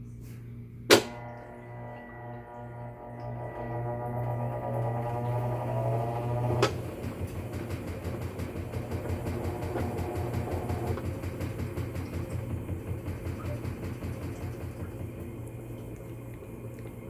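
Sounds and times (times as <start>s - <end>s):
washer motor pulsing hum: 0.0s - 17.0s
washer click: 0.9s - 11.0s.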